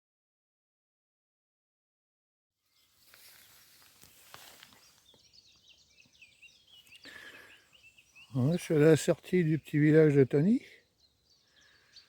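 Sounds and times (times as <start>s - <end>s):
small birds chirping: 2.7s - 12.0s.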